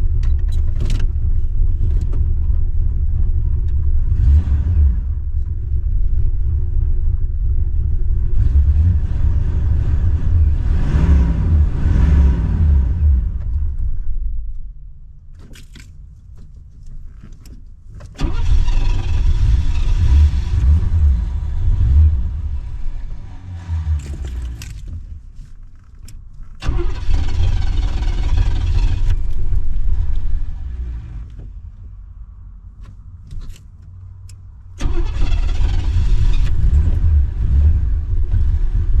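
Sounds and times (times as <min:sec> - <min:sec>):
engine cranking and sputtering: 0:16.9 - 0:31.5, 0:33.4 - 0:39.0.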